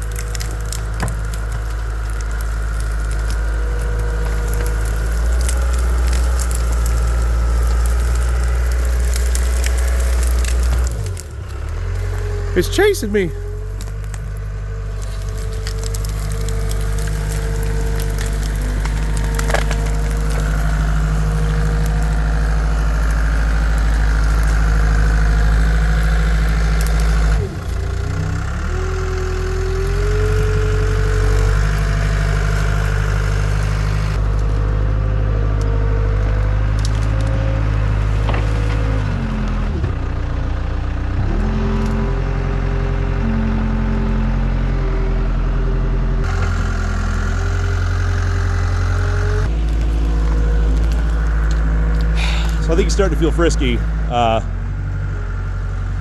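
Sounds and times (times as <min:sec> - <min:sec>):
sharp cracks: 0:00.0 - 0:27.9
diesel engine at high revs: 0:00.0 - 0:56.0.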